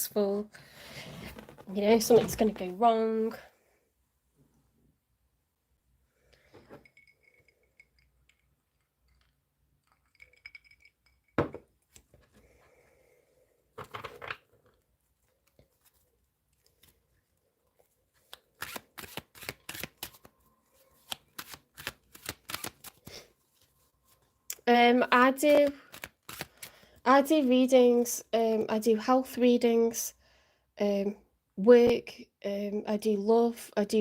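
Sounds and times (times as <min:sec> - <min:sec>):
cards snapping while shuffled: 0:21.0 - 0:23.1, 0:25.5 - 0:26.7
cards rustling: 0:21.0 - 0:23.8, 0:25.4 - 0:26.8.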